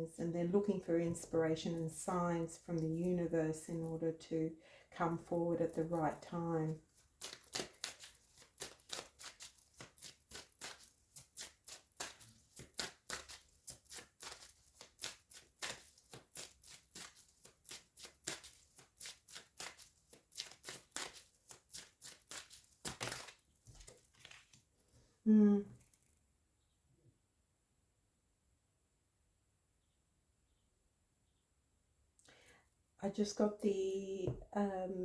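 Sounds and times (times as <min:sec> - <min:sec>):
cards being shuffled: 0:05.7 - 0:24.7.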